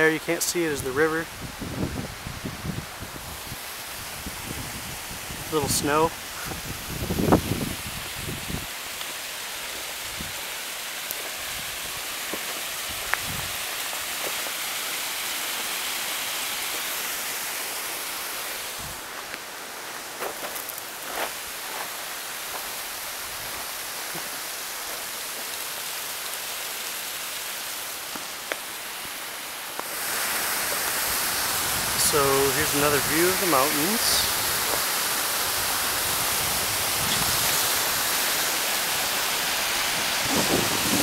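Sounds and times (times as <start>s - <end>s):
steady outdoor hiss: 0.0s - 41.0s.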